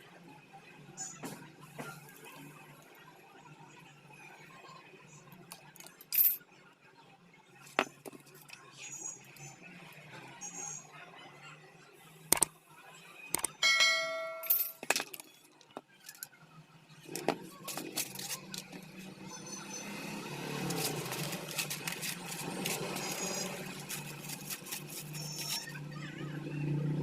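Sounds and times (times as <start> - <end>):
metal parts clinking: 13.4 - 15.4, 16.0 - 16.3
metal parts clattering: 14.2 - 15.4.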